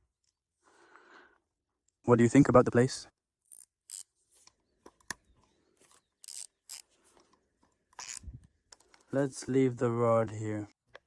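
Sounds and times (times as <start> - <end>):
faint handling clicks and rustles: 4.2 - 9.3.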